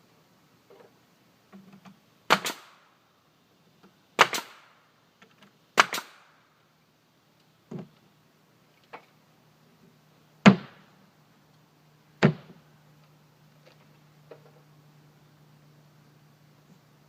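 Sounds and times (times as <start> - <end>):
nail gun firing: 2.3 - 2.8, 4.2 - 4.7, 5.8 - 6.3.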